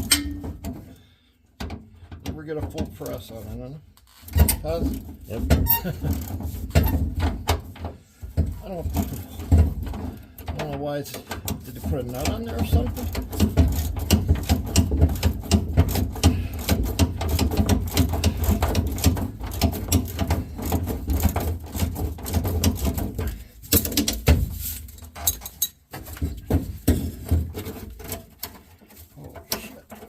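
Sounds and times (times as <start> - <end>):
metal parts knocking: 0.0 - 0.8, 8.4 - 30.0.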